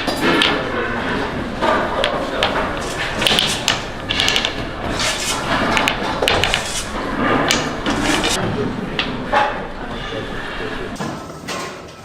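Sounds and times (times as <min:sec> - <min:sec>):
busy workshop background: 0:00.0 - 0:12.0
tools and trays knocking: 0:01.6 - 0:08.4.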